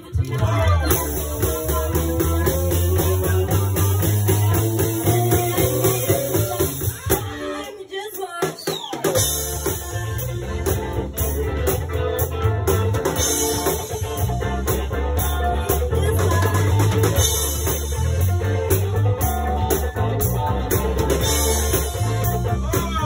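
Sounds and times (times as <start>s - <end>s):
heavy bass line: 0.0s - 7.6s, 9.2s - 23.0s
live funk band playing: 0.0s - 23.0s.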